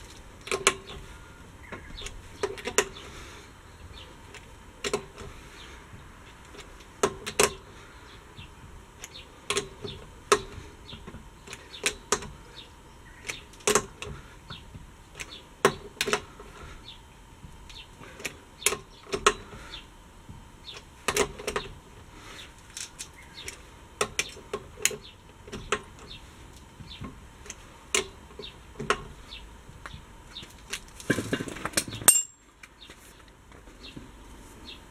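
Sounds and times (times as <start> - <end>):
sharp clicks and clinks: 31.1 - 32.4.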